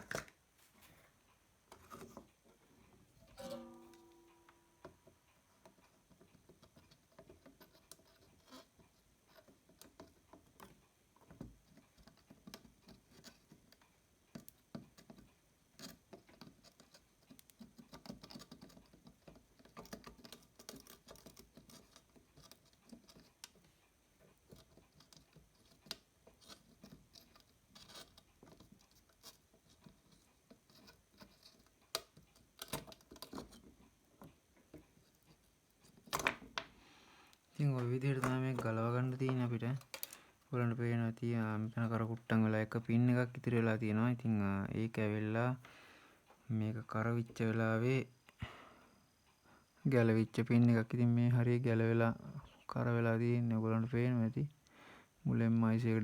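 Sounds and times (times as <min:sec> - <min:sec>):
faint scratches and small clicks: 0:00.0 - 0:40.8.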